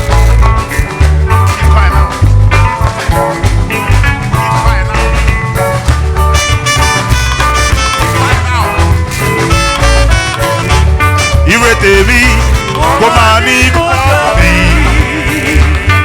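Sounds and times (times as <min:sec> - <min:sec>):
church band playing: 0:00.0 - 0:16.0
drums: 0:00.0 - 0:16.0
heavy pulsing bass: 0:00.0 - 0:16.0
keyboard or guitar notes: 0:00.0 - 0:16.0
people singing: 0:11.5 - 0:16.0.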